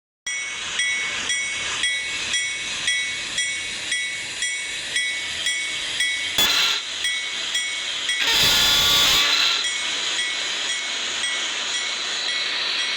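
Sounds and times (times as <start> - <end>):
freight train passing: 0.3 - 8.3, 9.4 - 12.9
ringing metallic clang: 6.4 - 7.2.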